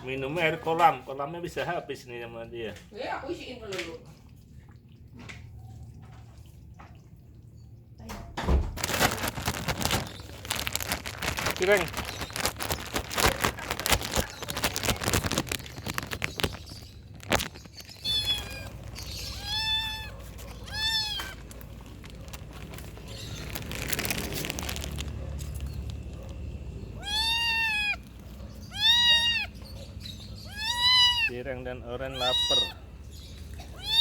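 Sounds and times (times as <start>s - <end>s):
rustling and clicking handling noises: 8.8s - 27.3s
kittens meowing: 9.6s - 25.1s, 25.9s - 34.0s.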